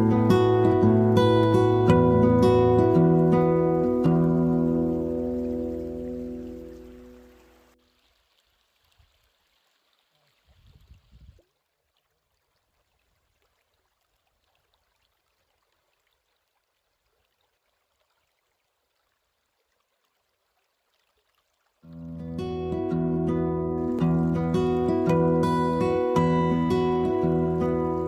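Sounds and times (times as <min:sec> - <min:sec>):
river water running: 0:00.0 - 0:28.0.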